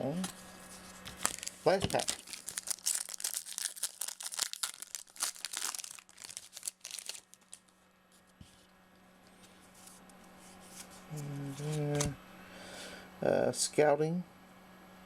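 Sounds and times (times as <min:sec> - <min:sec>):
wrapper tearing and crinkling: 0:00.2 - 0:07.8.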